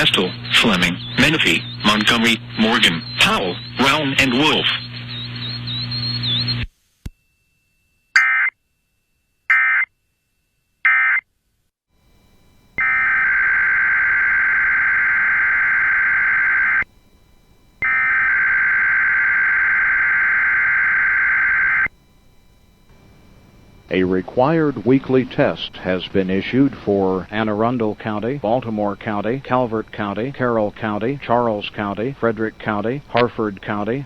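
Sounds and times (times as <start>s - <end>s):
loud steady alert tone: 0.0s - 4.8s, 12.8s - 16.9s, 17.8s - 22.0s
digital data bursts: 0.0s - 6.6s, 12.8s - 16.9s, 17.8s - 21.9s.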